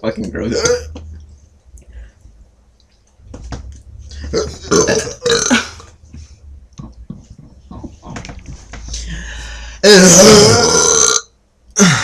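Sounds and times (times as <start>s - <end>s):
person belching loudly: 0.4s - 1.0s, 4.2s - 5.9s, 9.8s - 12.0s.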